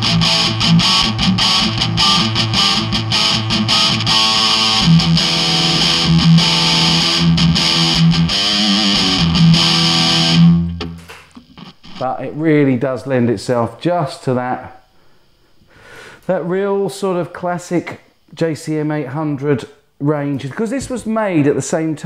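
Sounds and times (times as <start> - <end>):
overdriven electric guitar riff: 0.0 - 13.0.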